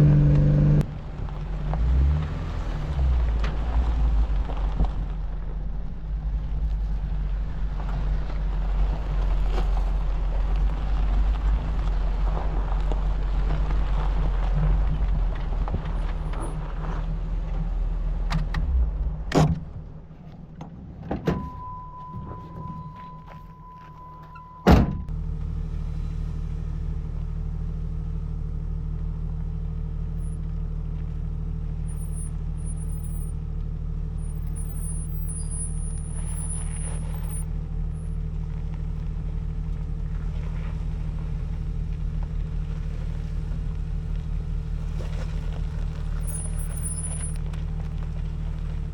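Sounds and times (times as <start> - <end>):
car engine running: 0.0 - 48.9
clunks: 18.2 - 25.2
electronic beep: 21.4 - 24.7
loud sharp thunk: 24.7 - 25.0.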